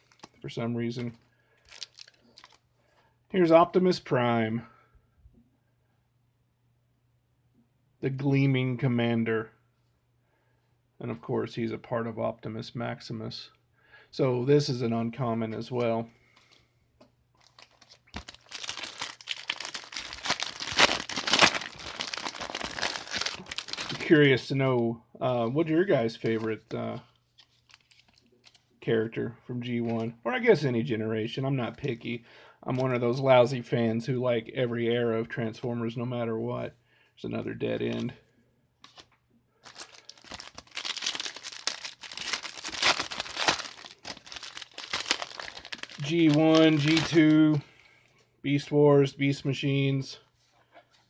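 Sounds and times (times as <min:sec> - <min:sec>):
foil wrapper crinkling: 0:00.0 - 0:00.4, 0:01.6 - 0:02.6, 0:17.4 - 0:24.1, 0:27.4 - 0:28.6, 0:39.6 - 0:47.6.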